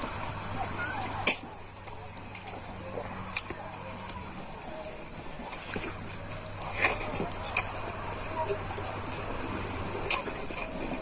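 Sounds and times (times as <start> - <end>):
quiet eating sounds: 0.0 - 11.0
steady low hum: 0.0 - 11.0.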